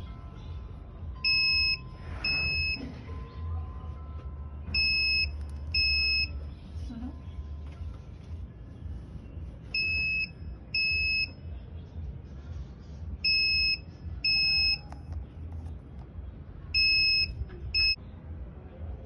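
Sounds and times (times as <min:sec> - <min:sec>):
shrill alarm beeps: 0:01.2 - 0:02.8, 0:04.7 - 0:06.4, 0:09.8 - 0:11.4, 0:13.2 - 0:14.9, 0:16.8 - 0:18.0.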